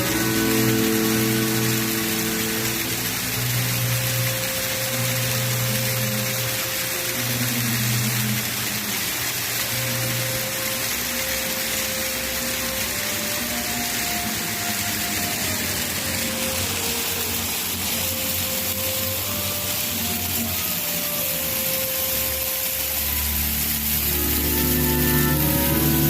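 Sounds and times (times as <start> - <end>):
soft background music: 0.0 - 26.0
waterfall rushing: 0.0 - 26.0.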